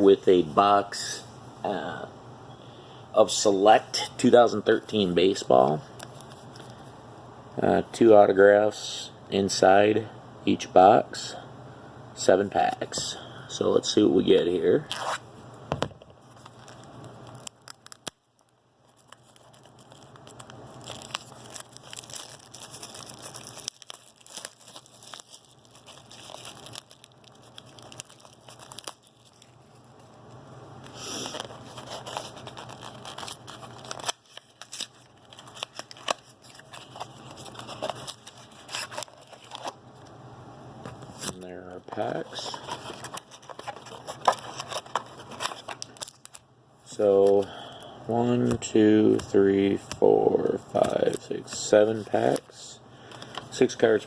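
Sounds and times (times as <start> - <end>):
card packaging clicks and rustles: 15.8 - 40.1, 40.8 - 46.4, 47.1 - 47.5, 48.3 - 54.0
plastic wrapping crinkling and tearing: 16.4 - 30.0, 30.8 - 39.8, 41.1 - 46.4.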